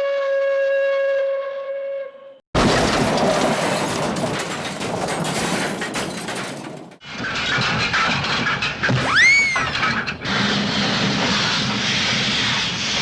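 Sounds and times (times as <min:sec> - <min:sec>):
steam engine whistle: 0:00.0 - 0:02.3
clattering: 0:02.6 - 0:07.0
loud crash of breaking and shattering: 0:02.6 - 0:07.0, 0:08.9 - 0:10.4.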